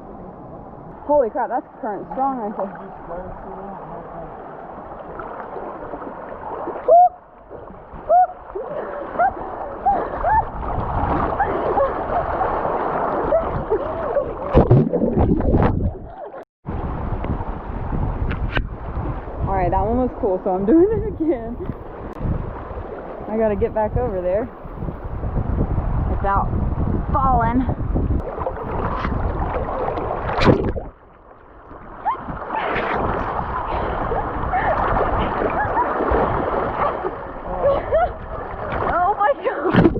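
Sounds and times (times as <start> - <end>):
creek water rushing: 1.1 - 6.9, 7.6 - 15.6, 31.7 - 39.9
loud splashes: 8.0 - 16.1, 28.2 - 31.0, 32.0 - 39.9.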